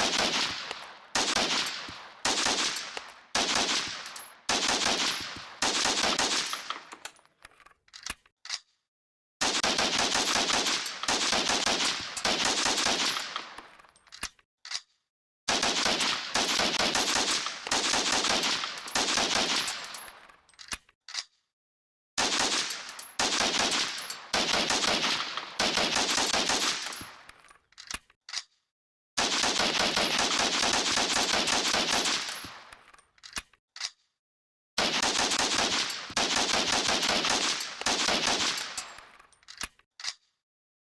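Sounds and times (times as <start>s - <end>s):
rapid gunfire bursts: 0.0s - 6.7s, 9.4s - 13.4s, 15.5s - 19.9s, 22.2s - 27.0s, 29.2s - 32.4s, 34.8s - 39.0s
single gunshots: 0.0s - 6.9s.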